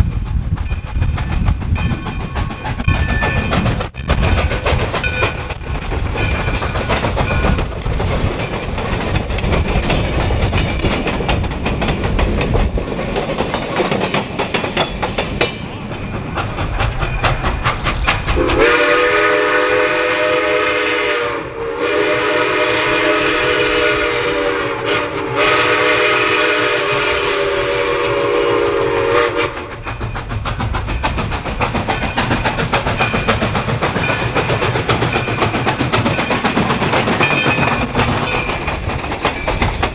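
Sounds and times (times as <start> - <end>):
steam locomotive clattering rumble: 0.0 - 20.9, 21.8 - 39.9
steam whistle chord: 18.5 - 29.4.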